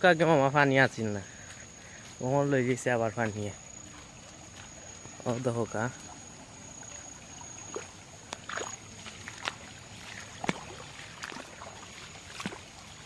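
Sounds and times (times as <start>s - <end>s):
floodwater sloshing and splashing: 3.8s - 13.0s.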